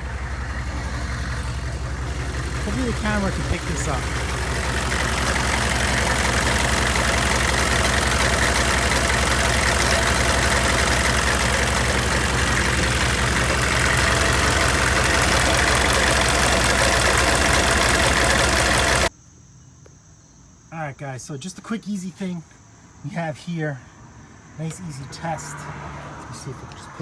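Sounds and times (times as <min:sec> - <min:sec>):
diesel engine idling: 0:00.0 - 0:19.1
rapid clanking from engine: 0:00.0 - 0:19.1.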